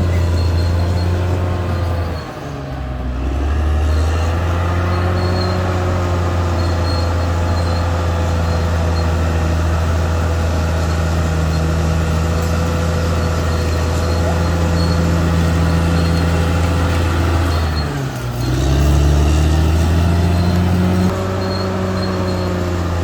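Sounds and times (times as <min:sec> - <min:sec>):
bulldozer diesel engine: 0:00.0 - 0:23.0.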